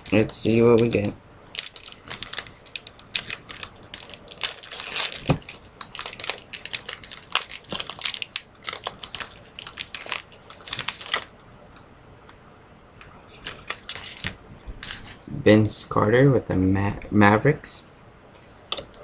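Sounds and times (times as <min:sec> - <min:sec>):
wrapper tearing and crinkling: 0:00.0 - 0:11.3, 0:13.3 - 0:15.0.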